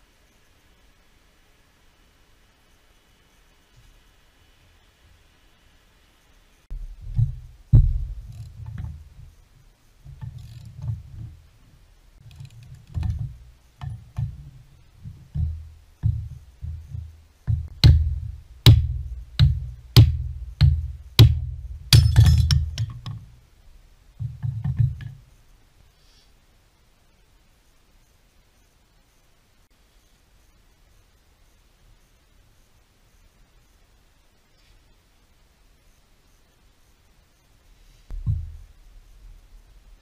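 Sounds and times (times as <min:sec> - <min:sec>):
drum beat: 0:17.7 - 0:22.5.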